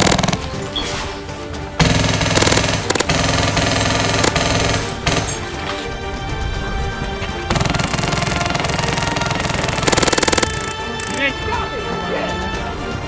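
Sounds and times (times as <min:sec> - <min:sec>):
rapid full-auto gunfire: 0:00.0 - 0:00.5, 0:01.8 - 0:05.6, 0:07.5 - 0:10.8
music: 0:00.0 - 0:13.0.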